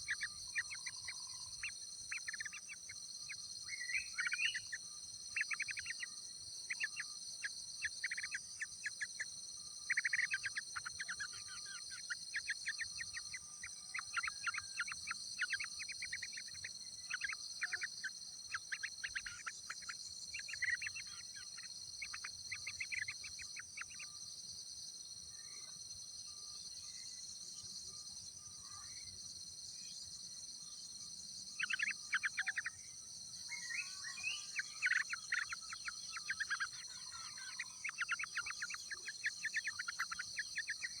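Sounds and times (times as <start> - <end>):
insect drone: 0.0 - 41.0
birds chirping: 33.4 - 41.0.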